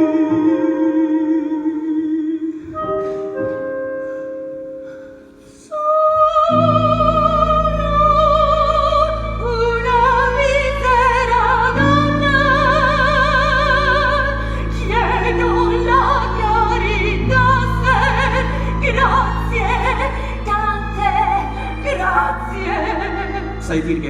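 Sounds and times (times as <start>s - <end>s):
singer with wide vibrato: 4.9s - 24.0s.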